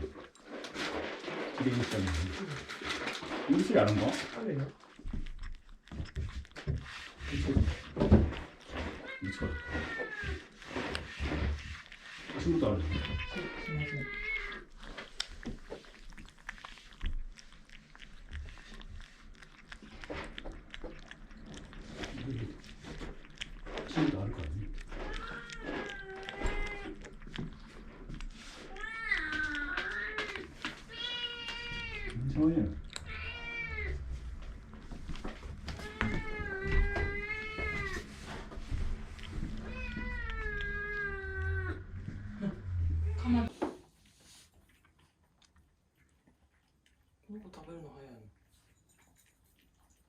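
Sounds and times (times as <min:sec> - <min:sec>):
kittens chewing and lapping: 0:00.0 - 0:50.0
kitten meowing: 0:09.0 - 0:10.4, 0:12.8 - 0:14.6, 0:25.0 - 0:27.0, 0:28.7 - 0:32.2, 0:32.9 - 0:34.0, 0:35.8 - 0:38.1, 0:39.6 - 0:43.5.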